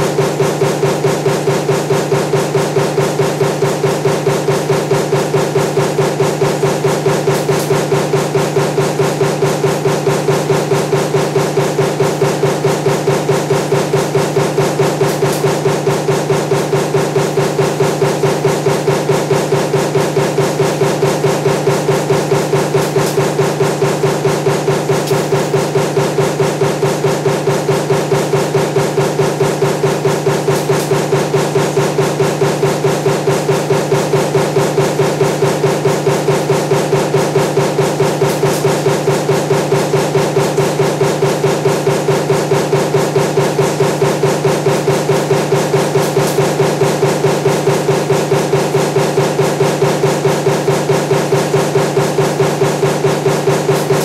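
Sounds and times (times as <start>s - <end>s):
power press striking: 0.0s - 54.0s
steady machine hum: 0.0s - 54.0s.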